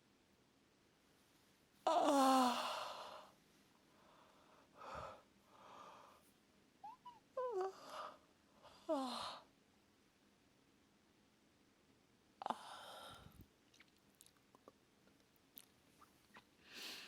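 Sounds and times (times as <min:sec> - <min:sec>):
soft breaths: 0:01.2 - 0:09.5, 0:12.4 - 0:17.0.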